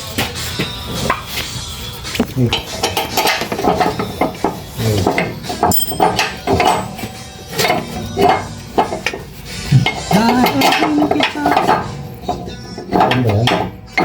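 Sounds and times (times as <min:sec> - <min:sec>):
metal tools clinking and knocking: 0:02.5 - 0:09.2, 0:09.8 - 0:14.0.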